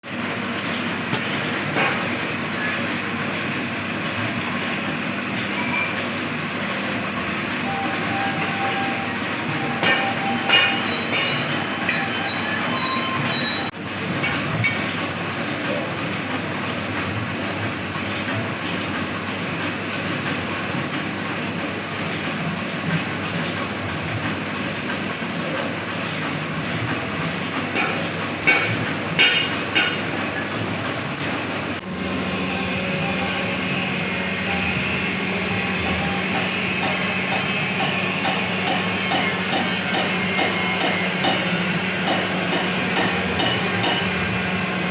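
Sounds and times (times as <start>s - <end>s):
machinery running: 0.1s - 44.9s
high metallic squeals: 5.2s - 13.7s.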